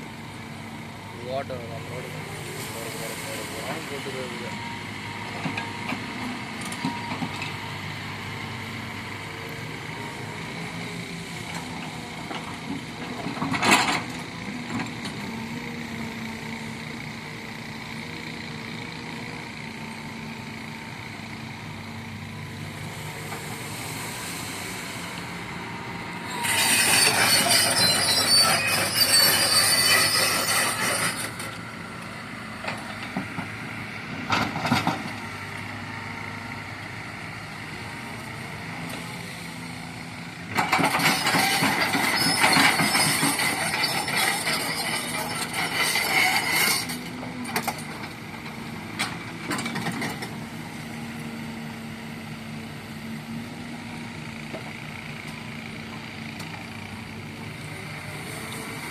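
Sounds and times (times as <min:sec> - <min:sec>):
excavator diesel engine running: 0:00.0 - 0:58.9
harsh high-pitched grinding: 0:26.2 - 0:31.6, 0:40.9 - 0:47.0.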